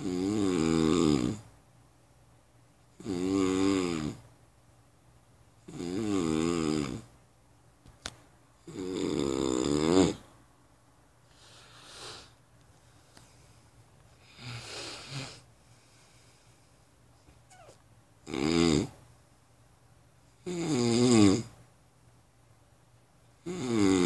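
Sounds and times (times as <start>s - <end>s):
heavy snoring: 0.0s - 1.4s, 3.0s - 4.2s, 5.7s - 7.1s, 8.7s - 10.2s, 18.2s - 19.0s, 20.4s - 21.5s, 23.4s - 24.0s
soft breaths: 11.2s - 17.9s.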